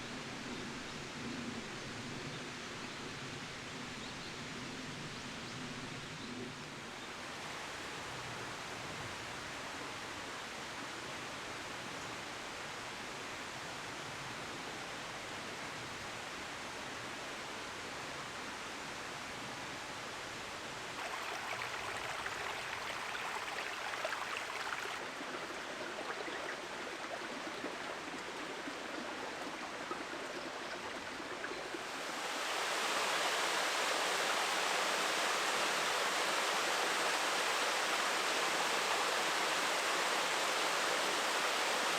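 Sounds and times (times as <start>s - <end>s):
flowing water rushing: 21.0s - 41.9s.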